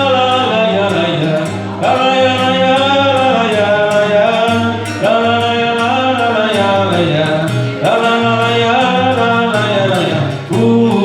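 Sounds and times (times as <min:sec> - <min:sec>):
guitar accompaniment: 0:00.0 - 0:11.0
man singing la la la: 0:00.0 - 0:11.0.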